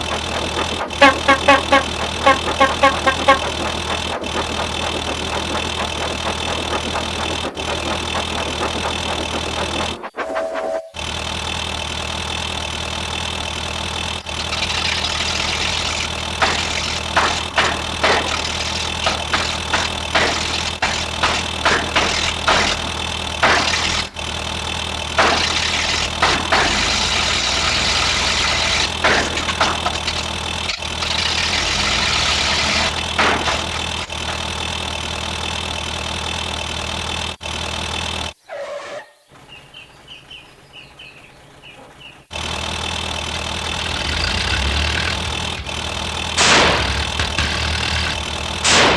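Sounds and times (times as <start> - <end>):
engine low rumble: 0.0 - 38.4, 39.4 - 48.9
hissing bursts: 42.6 - 48.9.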